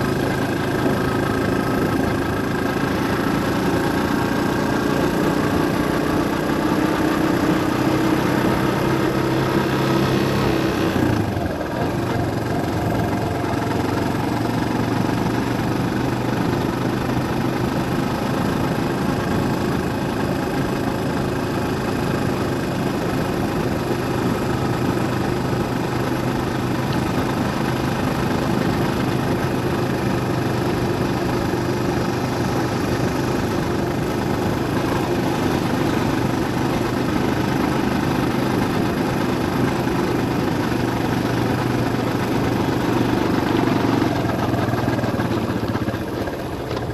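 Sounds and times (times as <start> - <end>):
road noise: 0.0 - 46.9
vehicle engine running: 0.0 - 46.9.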